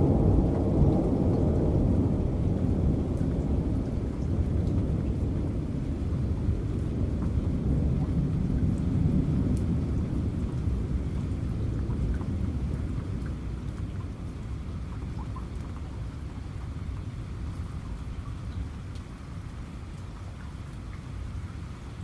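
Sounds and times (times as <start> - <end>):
thunder rumbling: 0.0 - 14.9
steady rain: 0.0 - 22.0.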